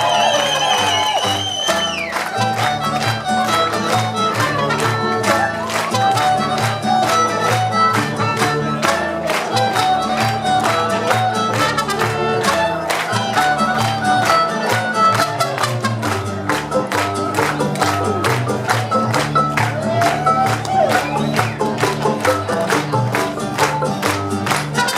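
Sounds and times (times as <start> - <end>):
guitar strumming: 1.3 - 24.9
violins playing melody: 2.2 - 17.0.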